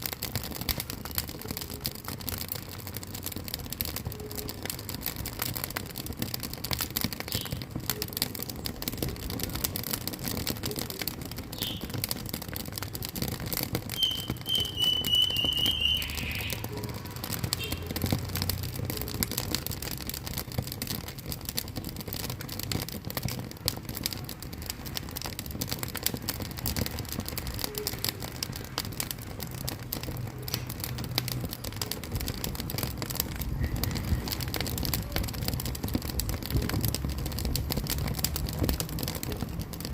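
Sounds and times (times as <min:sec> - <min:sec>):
wood fire crackling: 0:00.0 - 0:39.9
high wavering whistle: 0:14.0 - 0:16.6.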